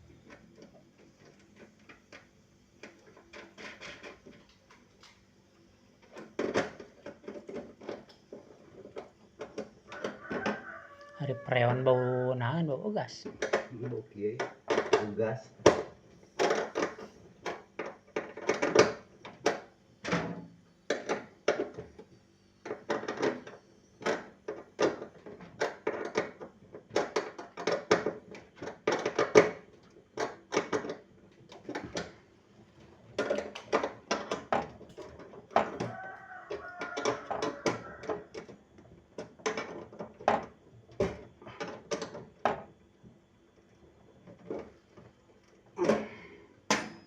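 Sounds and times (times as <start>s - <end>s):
tools and metal parts knocking: 33.2s - 38.5s.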